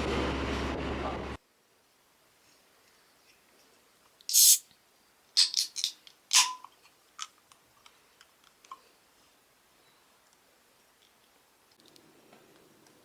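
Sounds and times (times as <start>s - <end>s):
small hard objects scraping: 5.4s - 6.6s.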